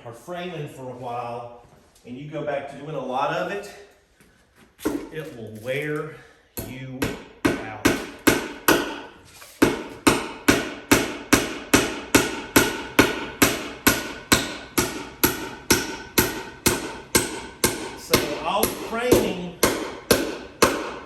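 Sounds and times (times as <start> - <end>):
hammer driving nails into wood: 6.6 - 21.0.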